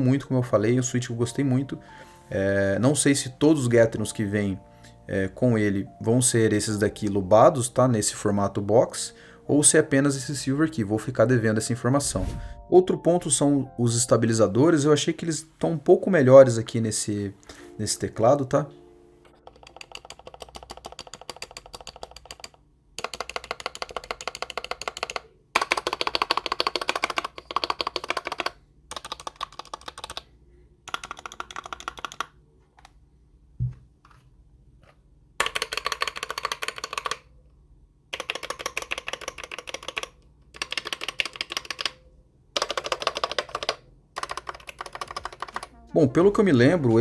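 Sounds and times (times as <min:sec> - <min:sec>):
mechanical keyboard keys rattling: 0:19.4 - 0:30.2, 0:30.9 - 0:32.3, 0:35.4 - 0:37.2, 0:38.1 - 0:42.0, 0:42.6 - 0:45.7.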